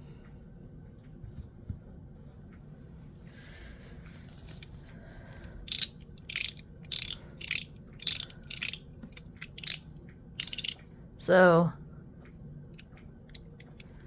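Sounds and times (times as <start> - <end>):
fidget slider clicking: 5.7 - 10.8, 13.3 - 13.9.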